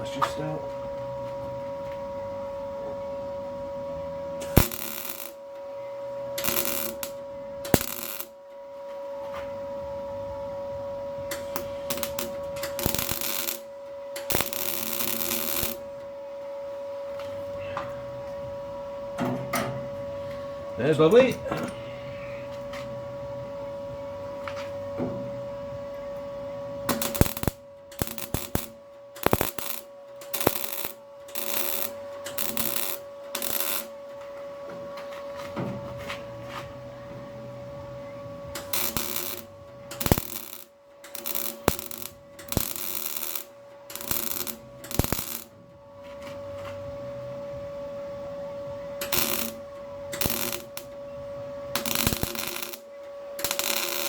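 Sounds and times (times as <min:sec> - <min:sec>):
steady hum: 0:00.0 - 0:54.0
welding arc crackle: 0:04.4 - 0:05.5, 0:06.4 - 0:08.4, 0:11.3 - 0:16.0, 0:26.8 - 0:34.0, 0:38.6 - 0:45.6, 0:49.0 - 0:51.0, 0:51.7 - 0:54.0.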